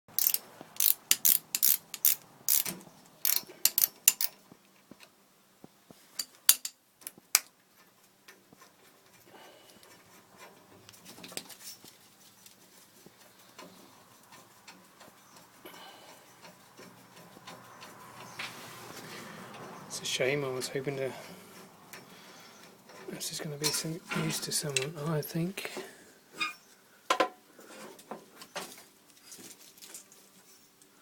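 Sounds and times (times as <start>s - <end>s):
hand tools clicking on metal: 0.1s - 4.5s, 6.2s - 11.0s.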